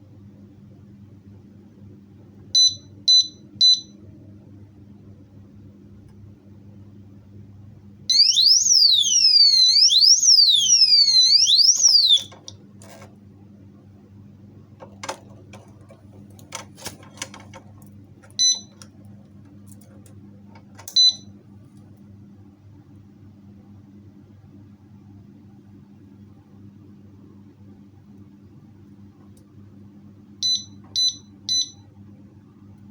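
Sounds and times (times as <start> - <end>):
alarm siren wailing: 8.1 - 12.4.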